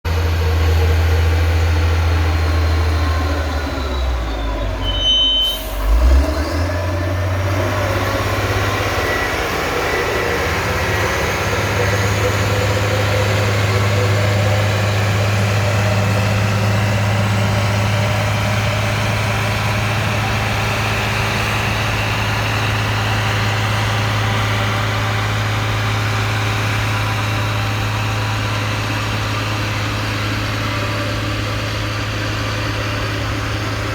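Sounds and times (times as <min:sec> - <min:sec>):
diesel engine running under load: 0:00.0 - 0:33.9.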